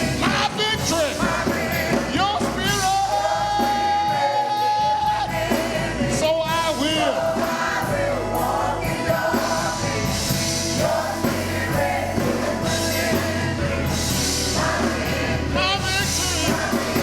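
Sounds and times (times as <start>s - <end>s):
gospel singers with live band: 0.0s - 17.0s.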